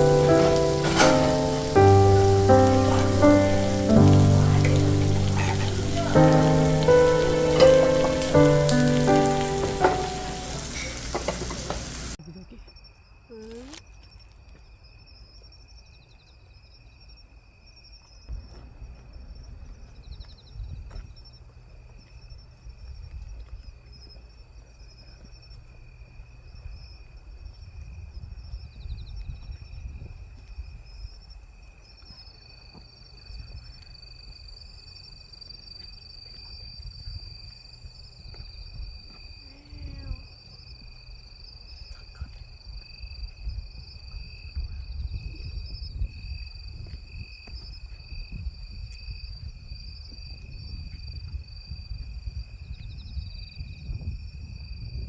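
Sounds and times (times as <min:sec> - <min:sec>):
insects trilling: 0:00.0 - 0:55.0
wind rumbling on microphone: 0:18.3 - 0:24.9, 0:25.6 - 0:31.6, 0:36.4 - 0:55.0.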